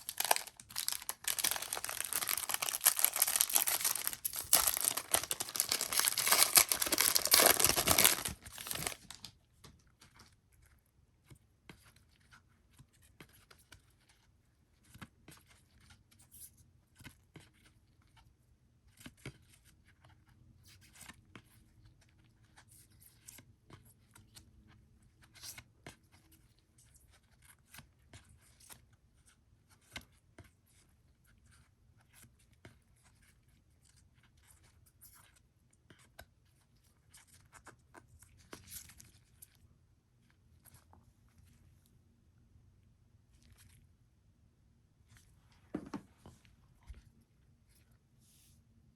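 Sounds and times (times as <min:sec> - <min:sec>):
cards clicking and rustling: 0:00.0 - 0:09.3
packaging ripping and crinkling: 0:00.0 - 0:09.3.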